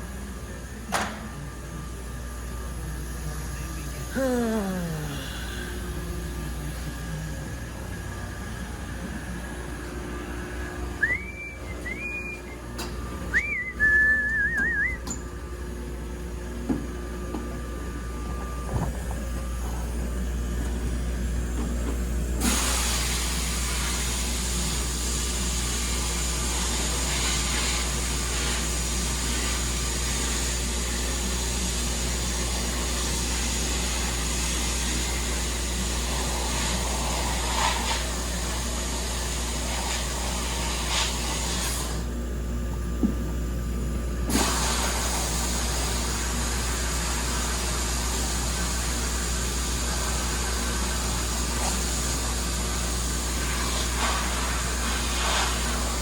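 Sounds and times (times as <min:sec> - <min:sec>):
low shop hum: 0:00.0 - 0:56.0
person whistling: 0:11.0 - 0:12.6, 0:13.3 - 0:15.2
sandblaster air hiss: 0:22.4 - 0:30.7, 0:32.7 - 0:42.1, 0:44.3 - 0:56.0.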